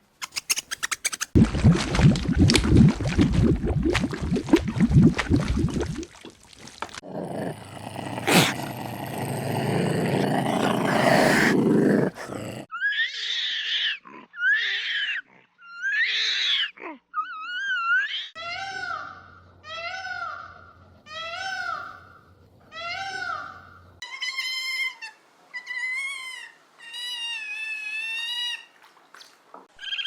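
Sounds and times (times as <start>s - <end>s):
long rough animal call: 7.0s - 12.7s.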